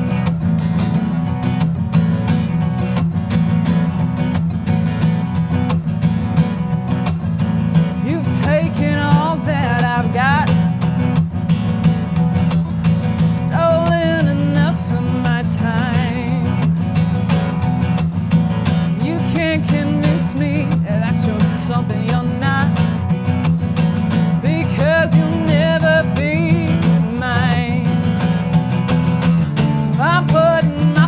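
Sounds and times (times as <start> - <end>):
strummed acoustic guitar: 0.0 - 31.0
person singing with vibrato: 8.0 - 10.8, 13.1 - 16.6, 18.9 - 23.1, 24.3 - 28.0, 29.5 - 31.0.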